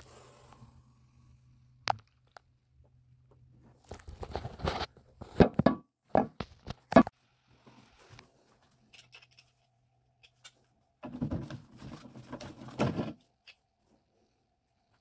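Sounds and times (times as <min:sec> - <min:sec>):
hard objects knocking and clattering: 0:05.3 - 0:07.1.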